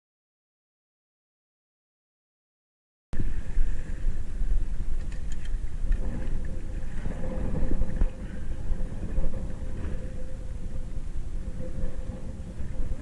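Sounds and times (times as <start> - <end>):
wind on microphone: 3.2 - 13.0.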